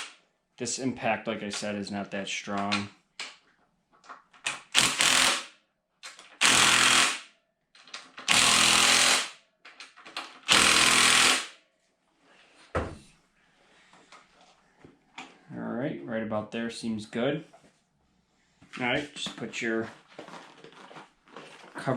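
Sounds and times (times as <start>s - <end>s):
impact driver hammering: 4.8s - 5.5s, 6.4s - 7.3s, 8.3s - 9.4s, 10.5s - 11.6s.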